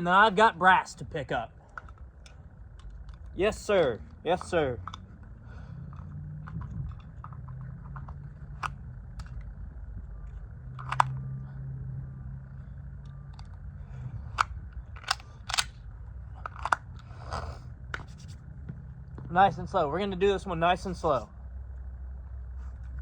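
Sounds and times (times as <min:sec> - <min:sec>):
low steady hum: 0:00.0 - 0:23.0
pistol and holster clicks: 0:10.8 - 0:11.2, 0:14.4 - 0:15.8, 0:16.4 - 0:17.1.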